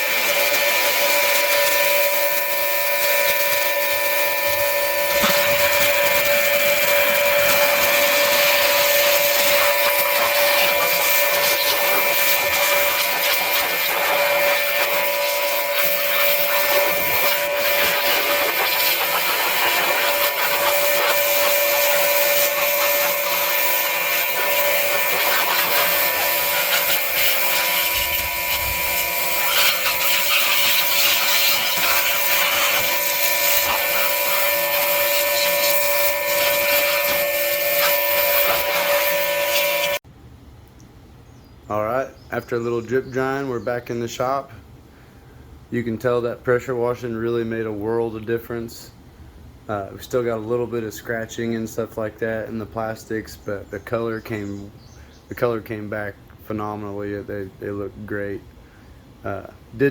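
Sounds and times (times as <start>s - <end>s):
pressure washer whining: 0.0s - 40.0s
water jet hissing: 0.0s - 40.0s.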